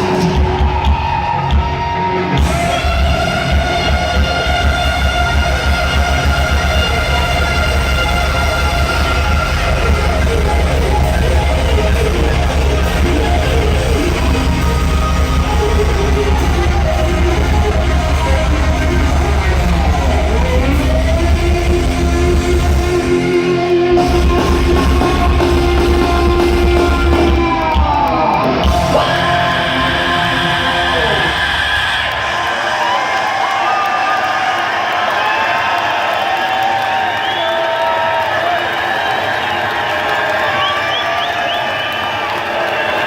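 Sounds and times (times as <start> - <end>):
heavy metal band playing live: 0.0 - 32.9
crowd cheering: 0.0 - 43.0
high yelled vocals: 24.0 - 32.8.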